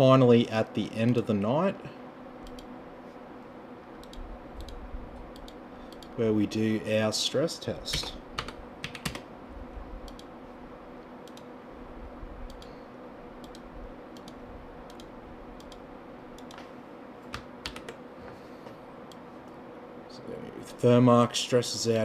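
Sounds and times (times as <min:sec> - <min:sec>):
faint steady hum: 0:00.0 - 0:22.0
keyboard and mouse clicks: 0:04.0 - 0:06.2, 0:07.9 - 0:09.2, 0:13.4 - 0:13.6, 0:14.2 - 0:15.8, 0:16.4 - 0:18.0.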